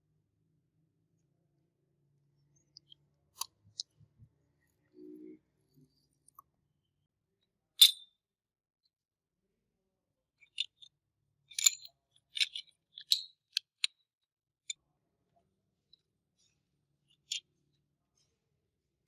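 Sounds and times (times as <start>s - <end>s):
small tools clicking and tapping: 11.5s - 14.0s.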